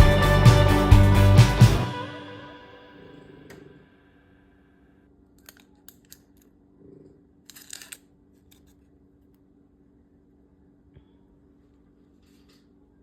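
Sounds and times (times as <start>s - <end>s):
background music: 0.0s - 3.7s.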